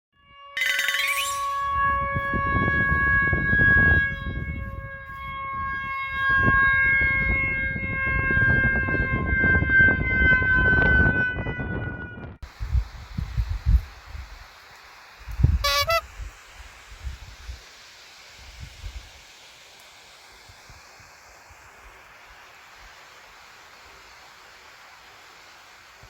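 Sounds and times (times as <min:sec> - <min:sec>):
warning siren steady tone: 0:00.2 - 0:12.4, 0:15.4 - 0:16.0.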